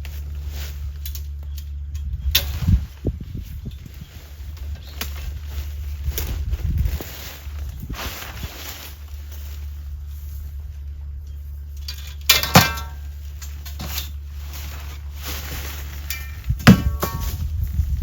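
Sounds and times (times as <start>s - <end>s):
steady low hum: 0.0s - 18.0s
sharp metallic clanks: 11.7s - 14.2s, 15.9s - 17.6s.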